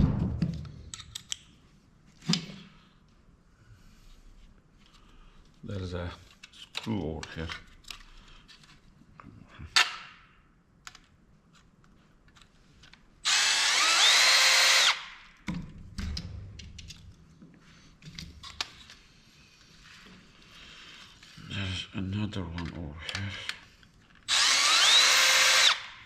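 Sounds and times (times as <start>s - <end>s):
small parts clicking and knocking: 0.5s - 1.6s
power screwdriver motor whine: 13.3s - 15.0s, 24.3s - 25.9s.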